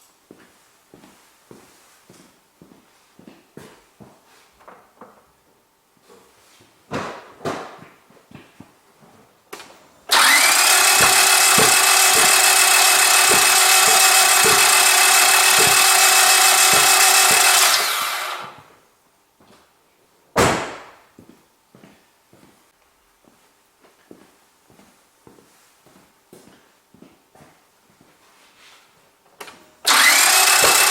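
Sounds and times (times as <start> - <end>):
starter motor cranking engine: 10.1 - 18.6, 29.8 - 30.9.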